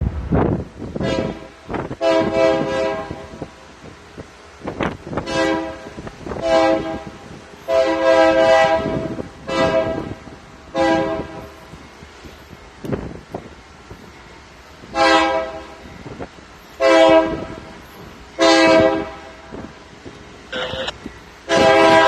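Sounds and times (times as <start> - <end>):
locomotive air horn blasts: 1.0 - 3.4, 5.1 - 11.5, 14.9 - 15.8, 16.8 - 17.7, 18.4 - 19.6, 21.5 - 22.0.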